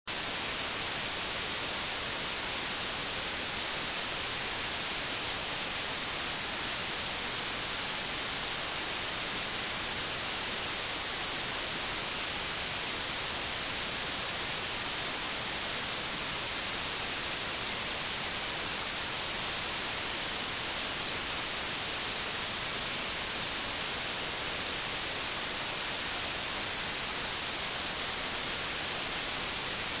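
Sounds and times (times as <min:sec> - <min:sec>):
white noise hiss: 0:00.1 - 0:30.0.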